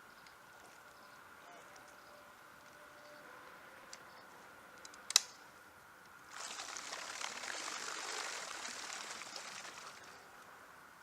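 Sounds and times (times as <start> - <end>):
sharp click: 4.8 - 5.4
churning splashing water: 6.3 - 10.1.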